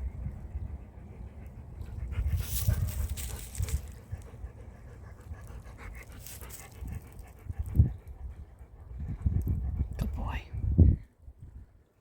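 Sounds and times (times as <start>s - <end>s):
dog panting: 0.4s - 10.0s.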